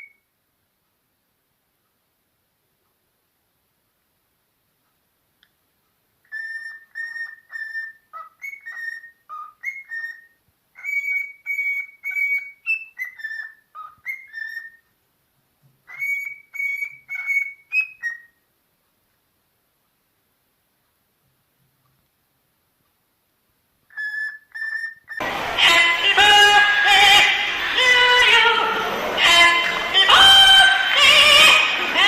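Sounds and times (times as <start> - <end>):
parrot whistling a melody: 0.0 - 0.2, 6.3 - 14.8, 15.9 - 18.4, 23.9 - 32.0.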